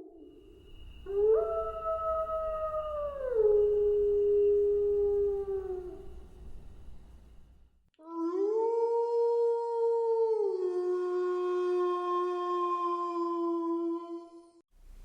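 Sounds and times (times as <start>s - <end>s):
wolf howling: 0.0s - 7.2s.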